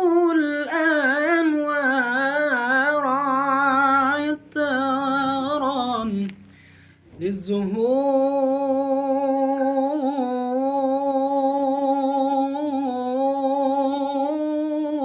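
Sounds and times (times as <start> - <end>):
person taking a breath: 6.5 - 7.1.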